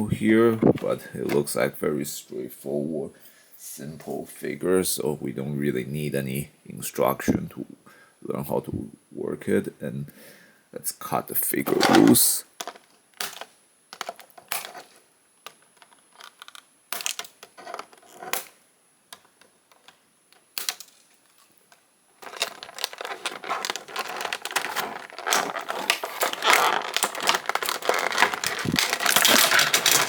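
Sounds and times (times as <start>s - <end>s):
plastic packaging clicks: 12.6s - 30.0s
plastic crinkling: 20.6s - 30.0s.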